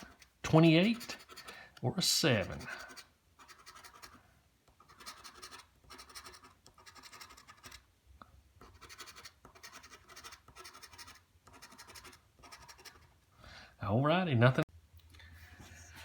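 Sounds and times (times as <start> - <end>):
scratching scratch-off ticket: 0.0 - 7.8, 8.6 - 13.2.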